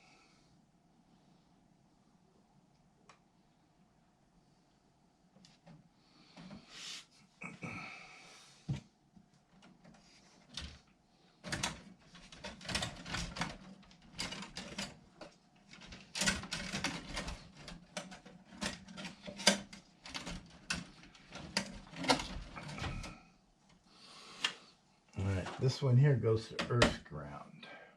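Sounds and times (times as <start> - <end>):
hardware clicking and rattling: 11.4 - 23.2.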